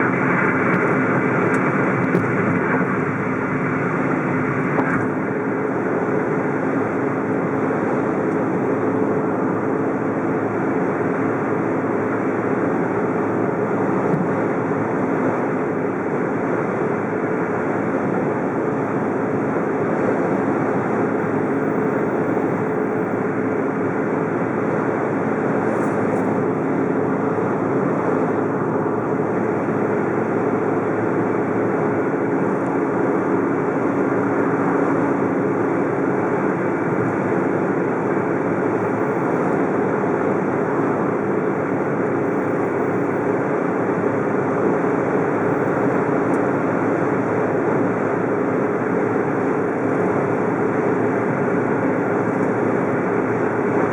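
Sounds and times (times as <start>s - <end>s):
wind noise: 0.0s - 6.9s
low engine hum: 0.0s - 53.9s
road noise: 0.0s - 53.9s.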